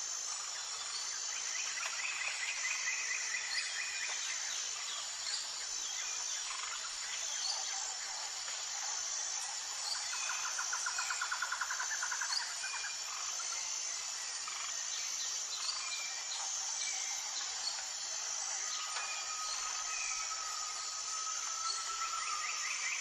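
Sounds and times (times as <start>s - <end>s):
insects chorus: 0.0s - 23.0s.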